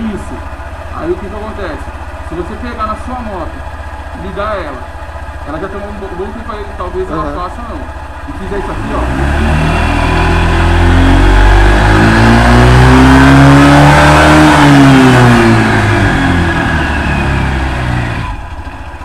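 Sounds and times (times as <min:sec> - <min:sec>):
scooter engine revving: 0:00.0 - 0:19.0.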